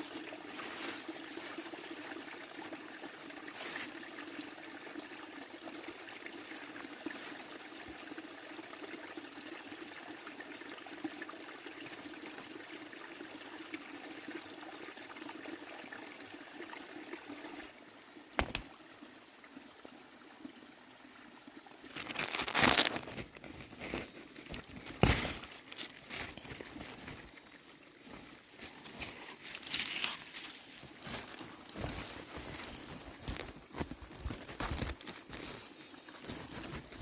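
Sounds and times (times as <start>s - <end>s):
water running and trickling: 0.0s - 37.0s.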